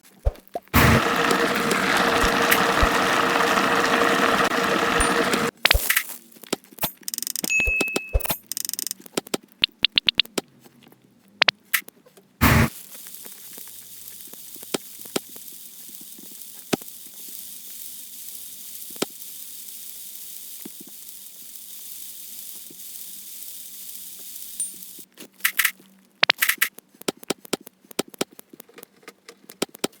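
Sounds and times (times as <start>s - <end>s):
food sizzling in a pan: 0.8s - 6.0s, 12.5s - 25.1s.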